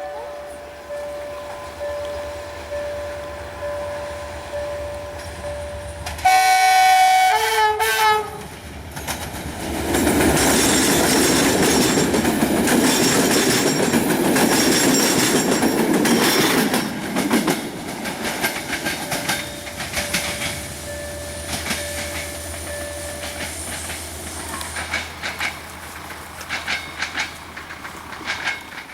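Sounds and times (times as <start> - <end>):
locomotive horn chord: 0.0 - 8.4
train coaches rumbling: 0.0 - 28.9
wheel clatter over rail joints: 8.4 - 28.9.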